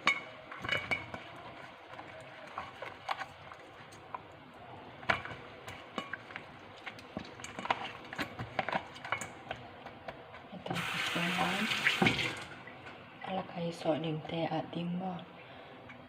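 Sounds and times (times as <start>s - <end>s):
kitchen utensils and dishes clicking: 0.0s - 3.2s.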